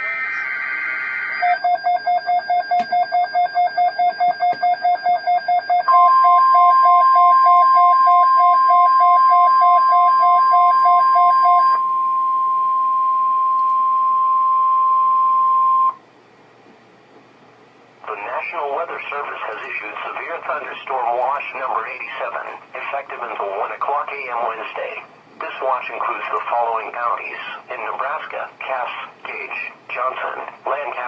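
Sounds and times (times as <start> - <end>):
steady warning alarm tone: 0.3 - 16.0.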